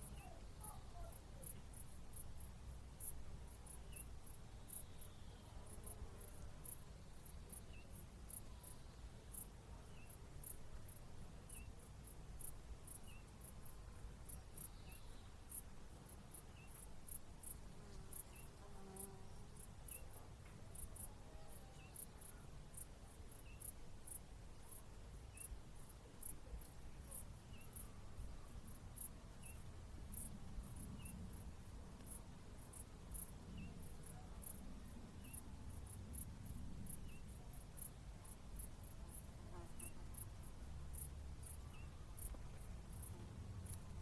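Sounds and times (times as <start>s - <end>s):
fainter lower insect chirp: 0.0s - 44.0s
quiet low rumble: 19.3s - 44.0s.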